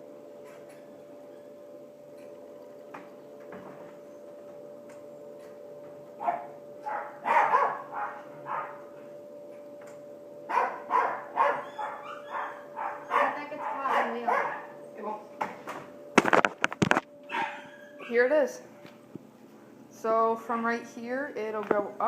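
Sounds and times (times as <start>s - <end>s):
steady low hum: 0.0s - 22.0s
dog barking: 6.2s - 8.9s, 10.5s - 14.7s, 17.3s - 18.2s.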